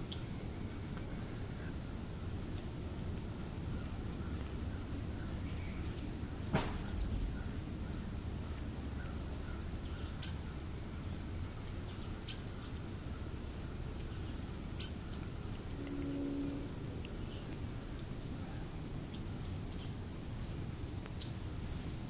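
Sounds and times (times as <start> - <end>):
steady low rumble: 0.0 - 22.0
low-pitched animal call: 15.7 - 17.5.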